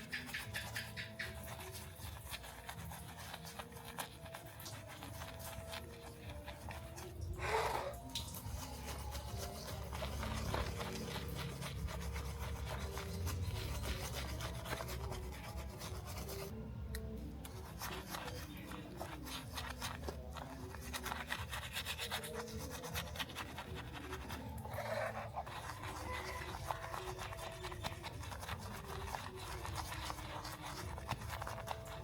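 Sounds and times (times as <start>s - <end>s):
rubbing and scraping strokes: 0.0s - 32.0s.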